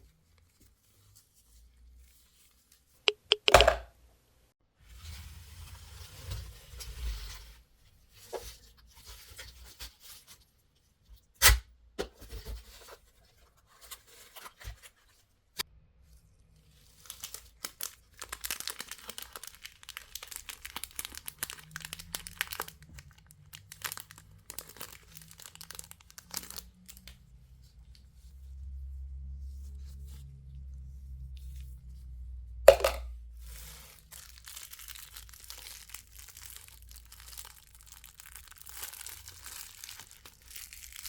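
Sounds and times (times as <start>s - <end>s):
sharp click: 3.1s - 3.8s
plastic wrappers crinkling: 16.9s - 27.2s, 32.8s - 41.0s.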